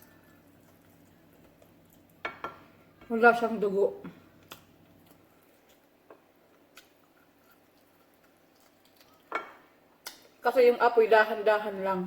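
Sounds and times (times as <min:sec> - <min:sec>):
chewing: 0:00.0 - 0:02.2, 0:04.4 - 0:09.3.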